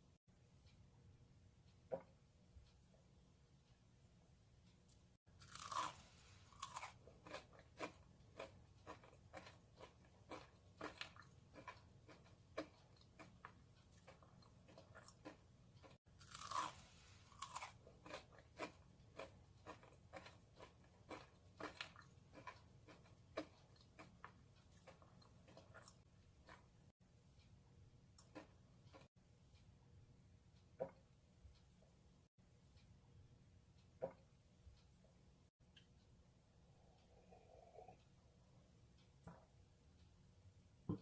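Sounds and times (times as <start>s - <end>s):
crunchy food biting and chewing: 5.4s - 26.7s.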